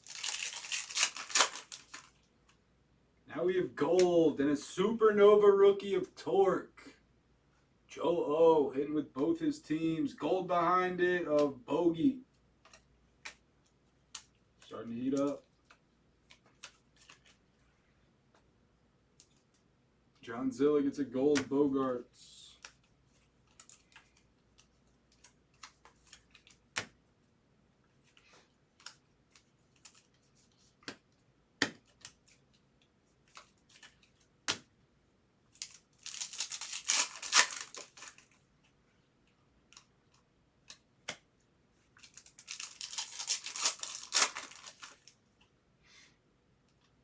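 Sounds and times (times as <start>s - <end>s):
foil wrapper tearing and crinkling: 0.0s - 2.2s, 35.6s - 38.4s, 42.0s - 45.2s
cards clicking and tapping: 23.5s - 27.0s, 28.1s - 32.4s, 33.2s - 34.8s.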